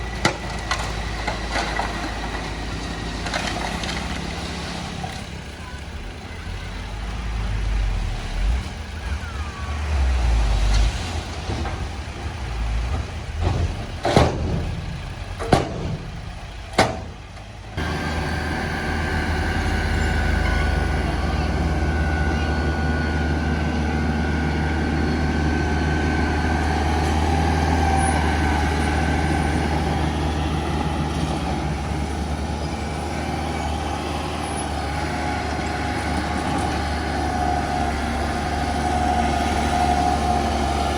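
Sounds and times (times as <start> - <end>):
heavy diesel machinery rumbling: 0.0 - 40.9
engine drone with high whine: 17.6 - 40.9.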